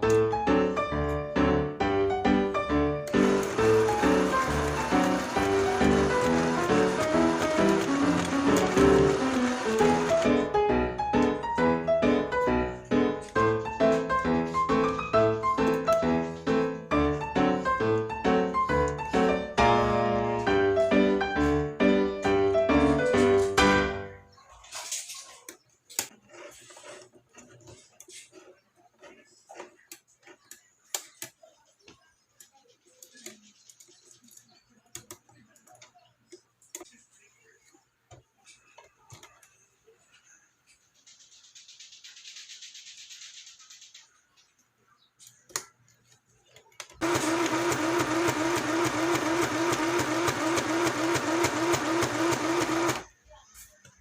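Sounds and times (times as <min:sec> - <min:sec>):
sewing machine stitching: 0:03.1 - 0:10.6, 0:26.1 - 0:30.4, 0:47.0 - 0:53.1.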